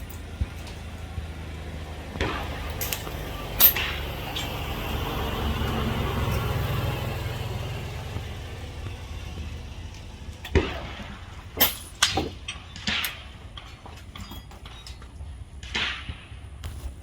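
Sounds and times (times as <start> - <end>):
air rifle shots: 2.1 - 4.2, 10.5 - 13.7, 15.6 - 16.5.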